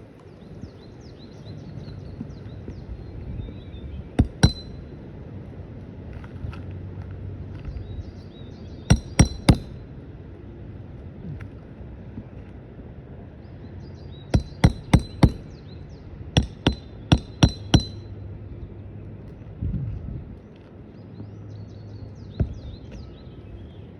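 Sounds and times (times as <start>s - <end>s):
hammer blows with metallic clink: 4.2s - 4.9s, 8.9s - 9.8s, 14.4s - 15.6s, 16.4s - 18.1s.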